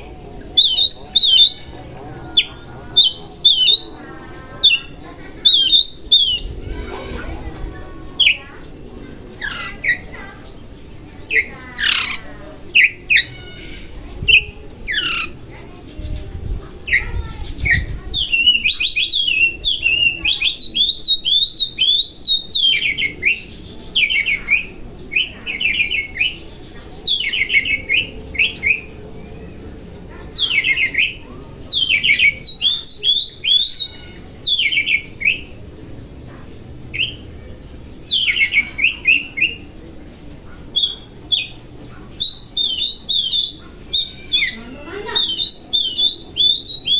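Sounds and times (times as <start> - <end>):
bird singing whistles and trills: 0.6 - 1.7, 16.9 - 29.0, 30.4 - 35.5, 40.8 - 46.9.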